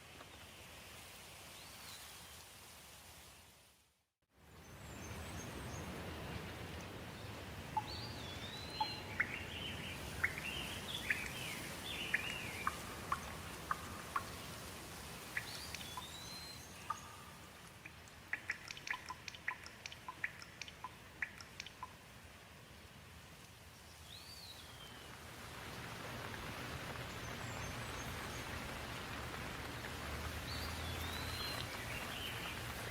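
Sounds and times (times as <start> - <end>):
steady rain hiss: 0.0 - 32.9
water drips: 5.8 - 32.9
birds singing: 7.8 - 14.6, 15.3 - 17.4, 30.4 - 32.9.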